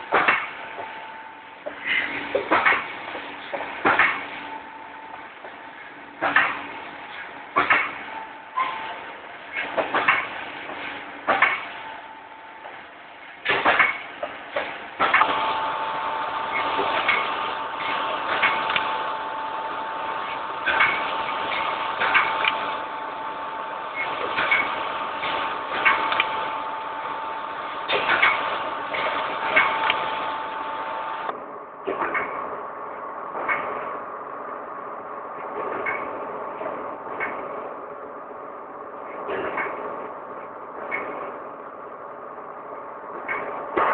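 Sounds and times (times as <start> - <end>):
steady whine: 4.4 - 39.3.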